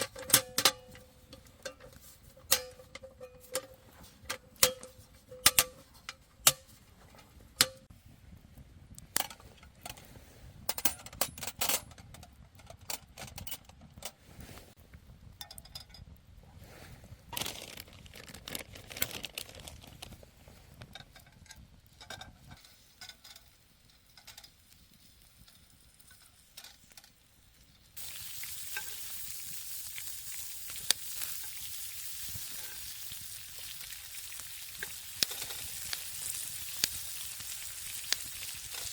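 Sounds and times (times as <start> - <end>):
food frying in hot pan: 21.8 - 38.9.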